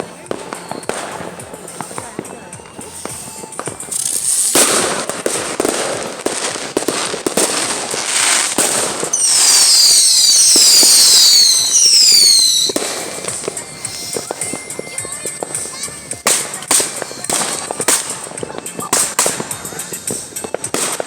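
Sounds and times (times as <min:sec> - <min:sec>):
firecrackers popping: 0:00.0 - 0:21.0
whistling fireworks: 0:00.0 - 0:21.0.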